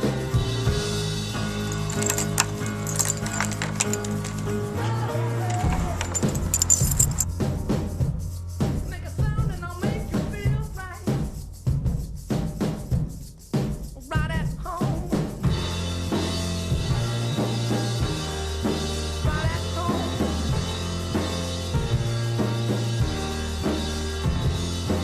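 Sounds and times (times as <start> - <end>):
band music with drums: 5.5 - 25.0.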